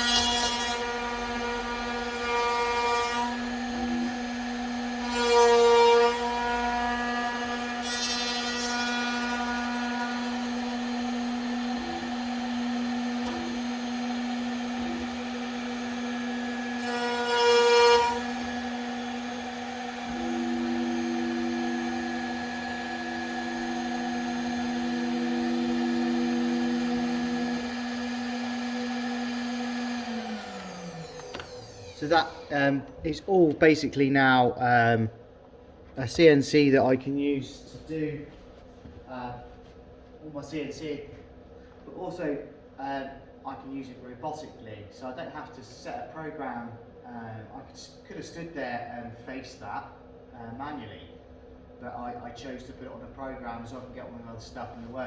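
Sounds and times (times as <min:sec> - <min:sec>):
router spindle cutting wood: 0:00.0 - 0:33.6.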